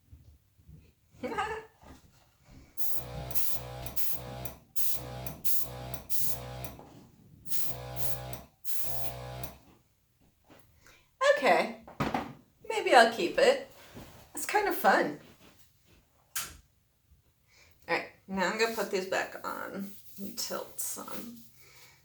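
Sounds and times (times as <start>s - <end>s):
air hissing from nozzle: 2.8s - 6.7s, 7.5s - 9.6s
electric air compressor running: 2.8s - 6.9s, 7.5s - 9.7s.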